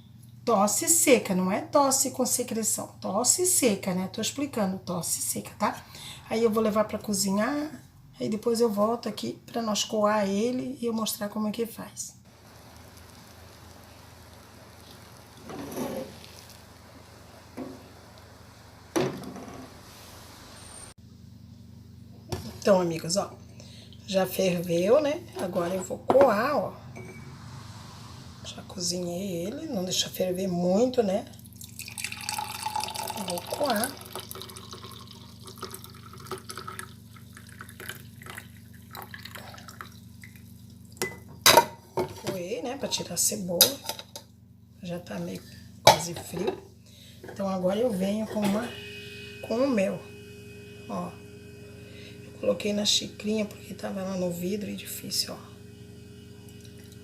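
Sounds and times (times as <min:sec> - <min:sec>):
liquid trickling through strainer: 0:31.5 - 0:41.0.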